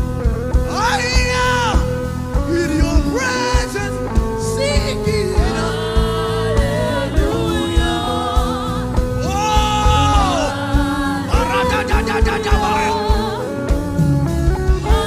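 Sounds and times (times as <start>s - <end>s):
regular drum beat: 0.0s - 15.0s
person singing long notes: 4.6s - 13.8s.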